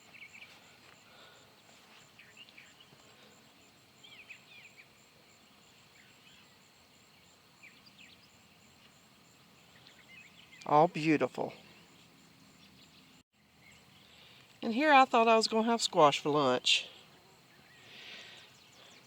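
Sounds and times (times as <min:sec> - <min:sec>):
bird chirps: 0:00.0 - 0:08.9, 0:09.6 - 0:14.4.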